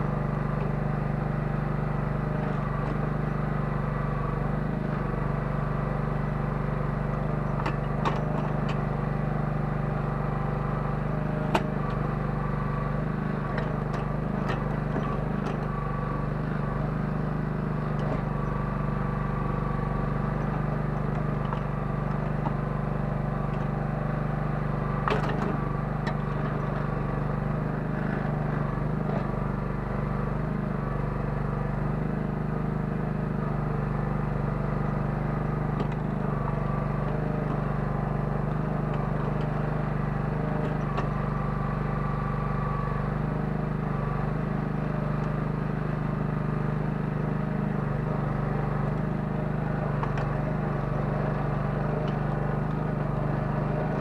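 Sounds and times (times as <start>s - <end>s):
excavator engine running: 0.0s - 54.0s
knocks and clanks from digging: 7.1s - 8.9s, 11.3s - 12.0s, 13.4s - 16.4s, 18.0s - 18.7s, 25.0s - 27.0s.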